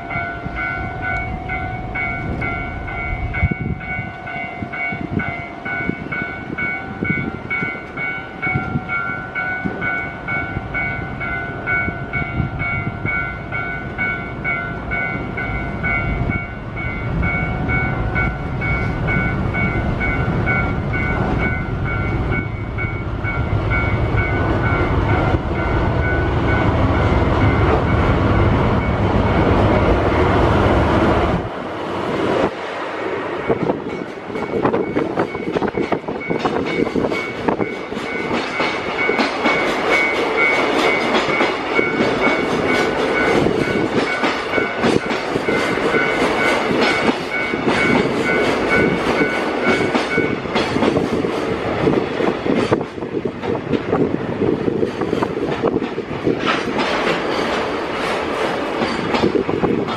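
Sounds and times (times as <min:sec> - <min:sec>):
pulsing ringing tone: 0:00.0 - 0:29.5
gusty wind: 0:00.0 - 0:59.9
train rumbling: 0:00.0 - 0:59.9.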